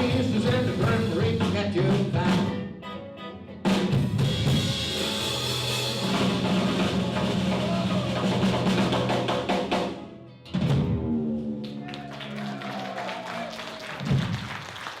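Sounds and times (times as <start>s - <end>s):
blues band playing: 0.0s - 14.6s
drum rolls: 6.0s - 10.0s, 10.6s - 14.9s.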